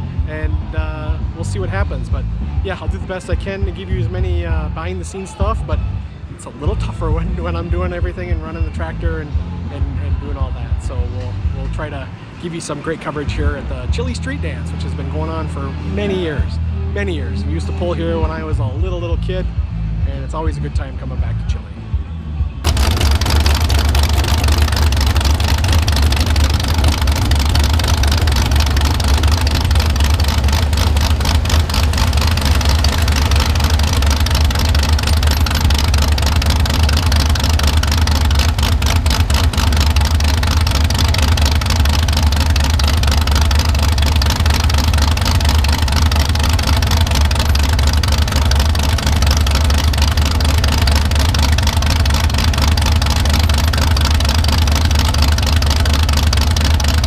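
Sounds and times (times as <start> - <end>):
tractor engine running: 0.0 - 0.2, 22.6 - 57.0.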